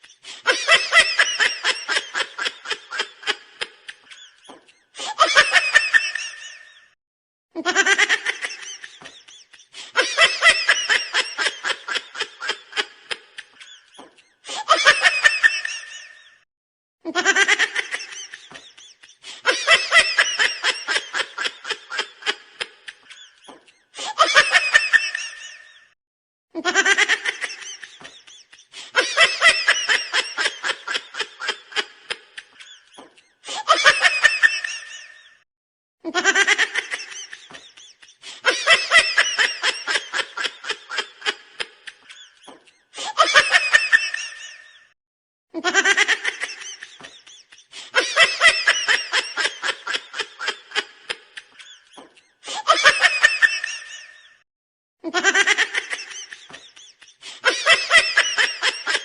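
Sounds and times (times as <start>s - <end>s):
rapid pulsing laughter: 26.6s - 35.4s, 36.1s - 45.0s, 45.6s - 54.4s, 55.1s - 59.0s.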